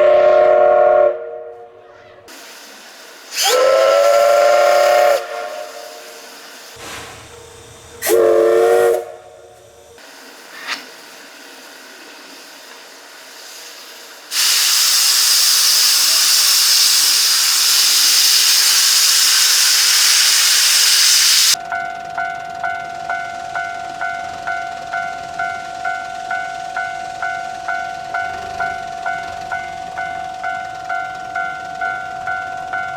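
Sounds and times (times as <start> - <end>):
steam locomotive whistle blast: 0.0 - 10.9, 13.5 - 21.6
loud steam hiss: 2.0 - 21.6
level-crossing alarm ringing: 19.8 - 32.9.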